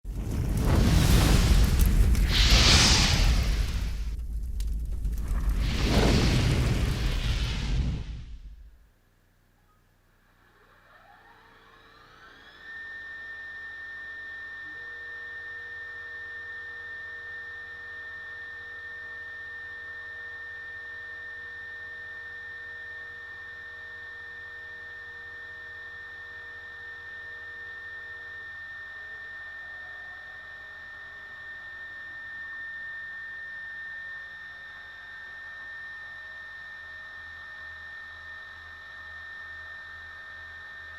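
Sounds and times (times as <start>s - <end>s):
machine spindle whine: 10.3s - 40.9s.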